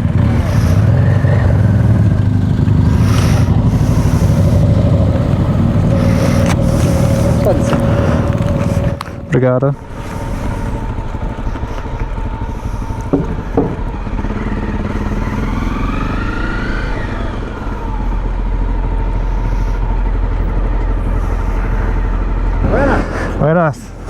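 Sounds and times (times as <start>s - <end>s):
engines rumbling: 0.0s - 24.0s
vehicle passing by: 0.0s - 24.0s
sharp knocks: 13.0s - 14.3s.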